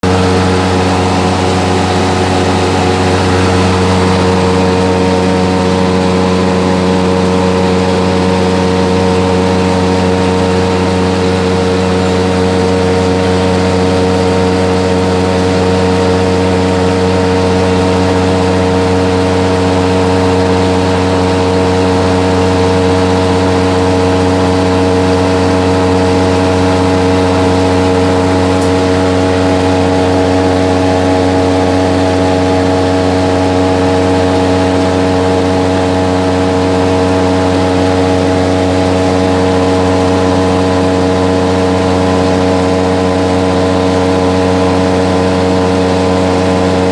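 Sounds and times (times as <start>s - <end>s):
electric fan motor humming: 0.0s - 46.9s.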